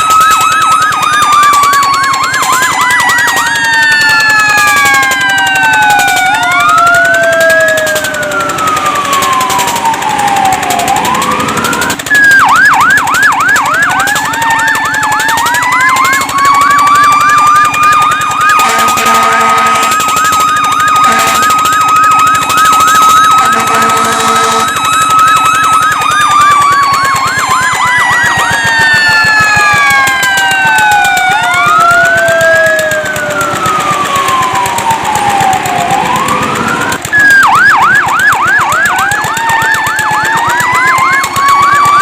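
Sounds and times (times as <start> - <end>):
siren fast yelp: 0.0 - 42.0
siren wailing: 0.0 - 42.0
truck horn blasts: 18.6 - 20.0, 21.0 - 21.5, 23.4 - 24.7.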